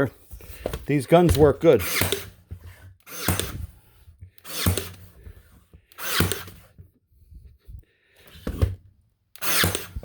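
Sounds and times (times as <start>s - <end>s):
stapler firing staples: 1.8s - 2.4s, 3.1s - 3.7s, 4.4s - 5.1s, 6.0s - 6.6s, 9.4s - 10.0s.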